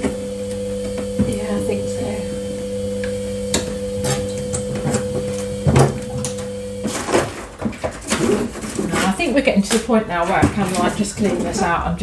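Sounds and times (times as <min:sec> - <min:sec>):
kitchen appliance electrical hum: 0:00.0 - 0:12.0
knocks and clatters of handling: 0:06.9 - 0:11.7.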